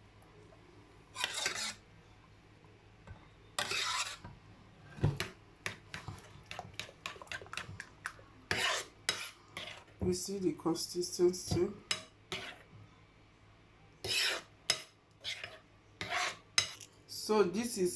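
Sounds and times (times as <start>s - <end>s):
spoon scraping a dish: 1.2s - 1.8s, 3.6s - 4.3s, 8.5s - 10.0s, 11.9s - 12.7s, 14.0s - 16.9s.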